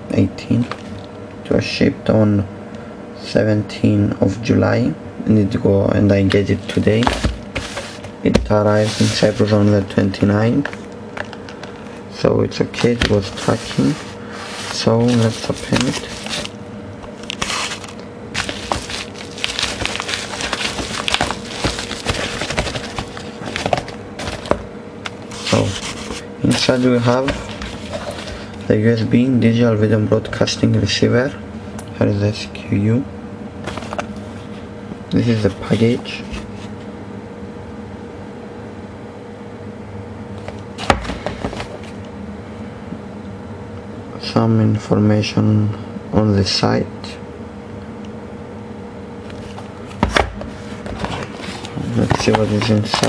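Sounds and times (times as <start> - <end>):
low background hum: 0.0 - 53.0
package wrapping crinkling: 13.0 - 26.3.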